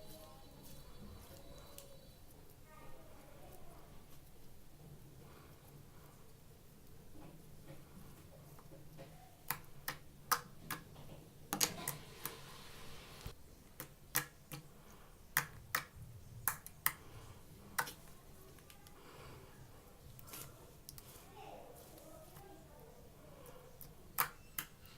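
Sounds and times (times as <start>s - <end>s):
soft squelching hiss: 0.0s - 9.9s, 11.6s - 15.8s, 16.8s - 24.8s
slime clicking and popping: 9.4s - 10.9s, 13.7s - 14.7s, 15.3s - 17.1s, 17.7s - 18.0s, 23.8s - 24.8s.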